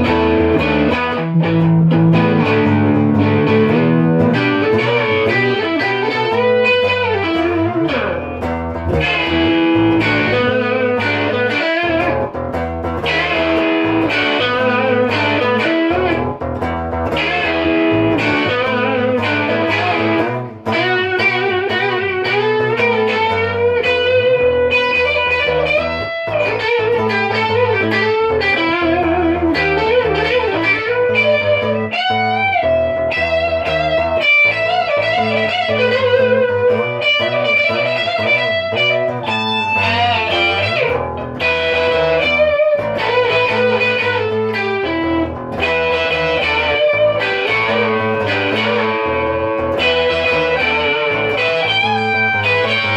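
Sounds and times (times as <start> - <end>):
bass line: 0.0 - 52.9
lead electric guitar melody: 0.0 - 52.9.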